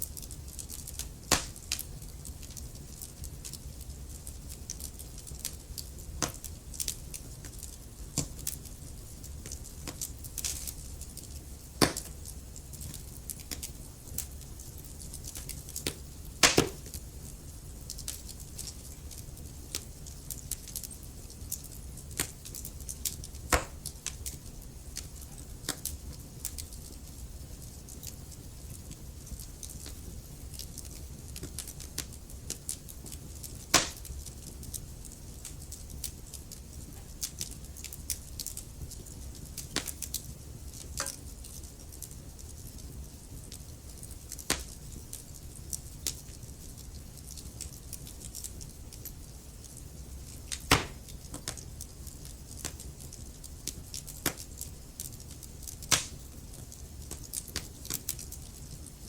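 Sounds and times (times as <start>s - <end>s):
wood fire crackling: 0.0s - 59.0s
loud fire pops: 0.2s - 3.6s, 9.4s - 17.0s, 22.1s - 24.4s, 29.6s - 34.8s, 37.4s - 41.8s, 43.4s - 44.8s, 50.5s - 51.6s, 55.2s - 58.5s.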